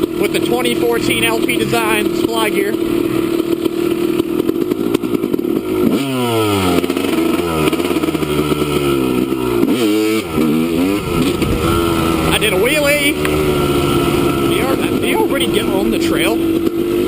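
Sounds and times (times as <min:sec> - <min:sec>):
dirt bike engine revving: 0:00.0 - 0:17.0.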